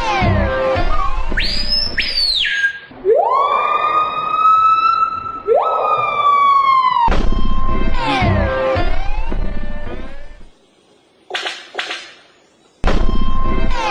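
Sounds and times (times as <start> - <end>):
siren wailing: 2.9 - 10.5, 12.9 - 13.9
sharp crack: 11.3 - 13.9.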